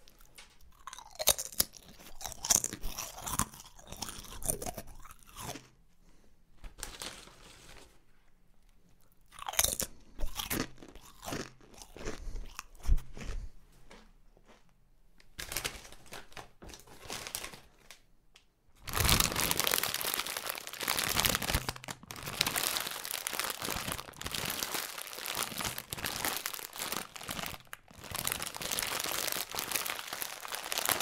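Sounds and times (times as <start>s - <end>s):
plastic chip packet crinkling: 0.0s - 5.6s, 6.7s - 7.9s, 15.4s - 18.1s, 18.8s - 31.0s.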